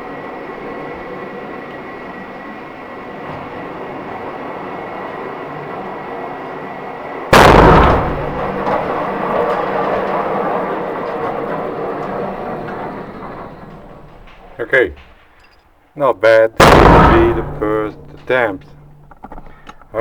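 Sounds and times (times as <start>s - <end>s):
rifle shot: 7.3s - 10.3s, 16.6s - 18.0s.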